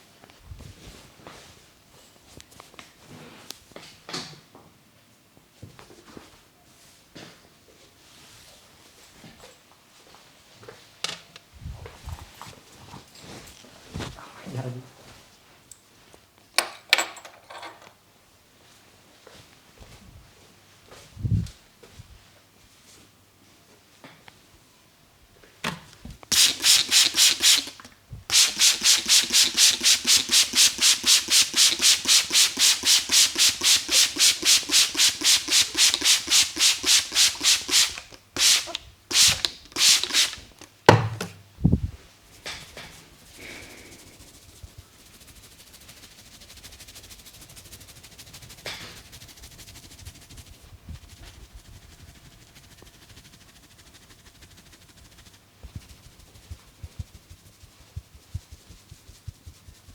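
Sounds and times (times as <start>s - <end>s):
hands rubbing through hair: 26.3s - 40.6s, 42.3s - 59.9s.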